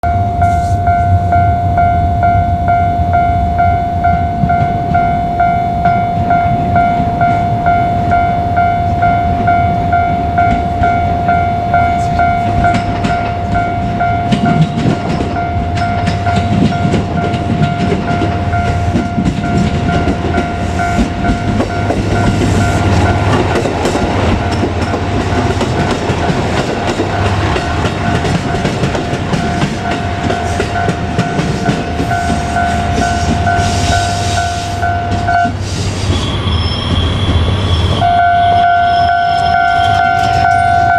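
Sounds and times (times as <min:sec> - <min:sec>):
level-crossing alarm bell: 0:00.0 - 0:35.6, 0:36.3 - 0:40.9
diesel railcar engine rumble: 0:00.0 - 0:40.9
train wheels clattering: 0:10.4 - 0:38.1.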